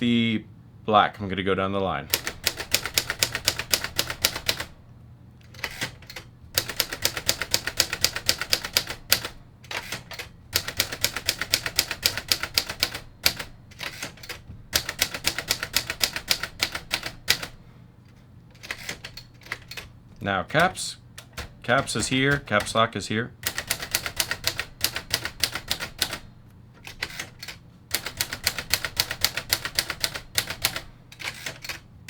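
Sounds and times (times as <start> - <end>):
manual typewriter typing: 2.1 - 4.8, 5.4 - 31.9.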